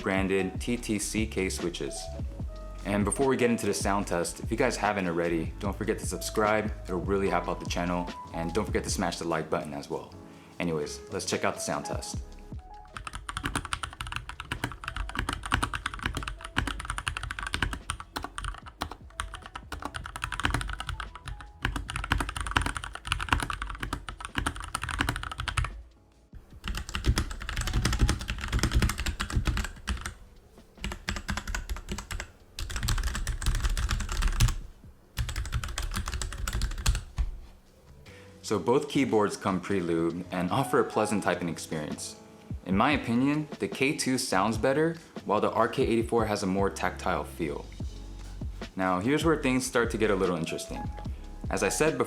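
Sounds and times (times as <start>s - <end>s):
mechanical keyboard typing: 13.0s - 25.7s, 26.6s - 30.2s, 30.8s - 34.6s, 35.2s - 37.1s.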